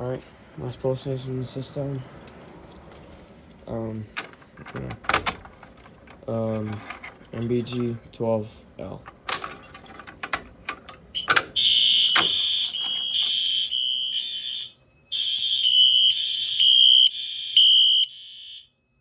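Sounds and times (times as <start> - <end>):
fire alarm pull station clicks: 4.0 - 7.8, 9.0 - 16.4
fire alarm high electronic tone: 11.2 - 19.0.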